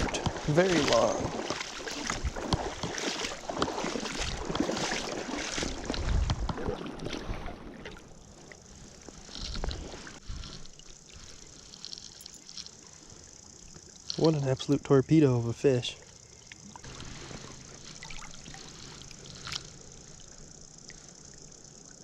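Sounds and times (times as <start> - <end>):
river water splashing: 0.0 - 22.0
water trickling: 0.0 - 22.0.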